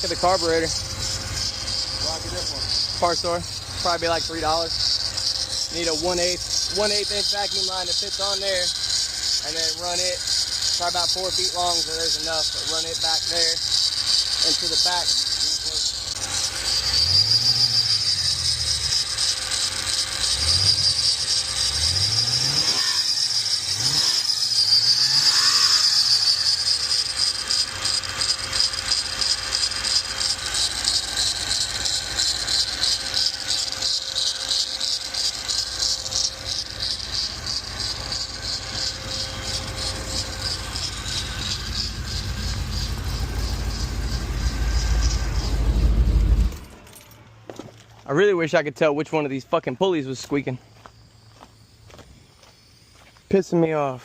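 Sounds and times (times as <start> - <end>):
belt squeal chirping: 0.0 - 47.1
engine running: 0.0 - 54.0.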